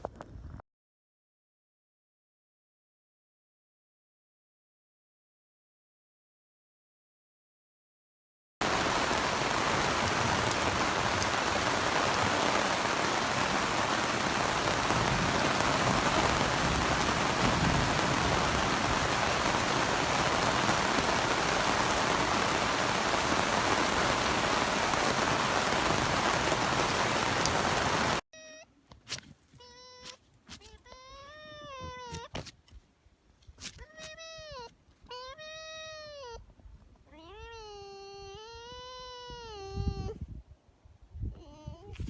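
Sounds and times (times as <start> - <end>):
torrential rain pouring: 8.6 - 28.2.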